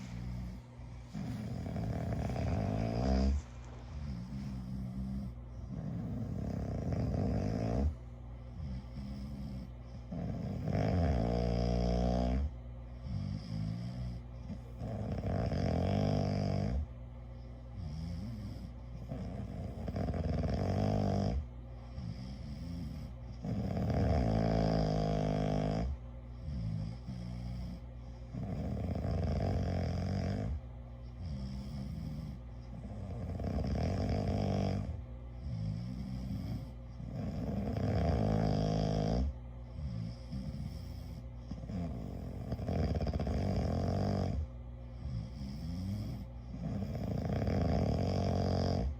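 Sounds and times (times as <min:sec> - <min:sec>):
person snoring: 0:00.0 - 0:08.0, 0:08.6 - 0:12.5, 0:14.8 - 0:16.8, 0:17.8 - 0:21.4, 0:22.0 - 0:30.6, 0:31.2 - 0:44.4, 0:45.0 - 0:48.9
quiet breathing: 0:00.0 - 0:48.9.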